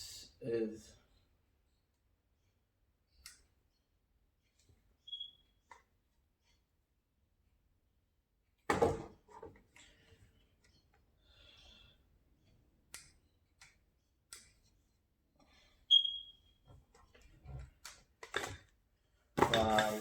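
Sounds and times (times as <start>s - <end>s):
brief high squeak: 5.1s - 5.4s, 15.9s - 16.5s.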